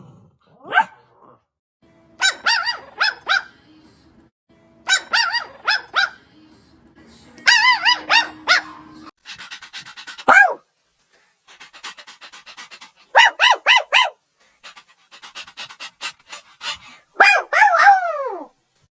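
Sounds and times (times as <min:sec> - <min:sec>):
puppies panting: 0:09.2 - 0:10.6, 0:11.5 - 0:13.9, 0:14.6 - 0:17.1.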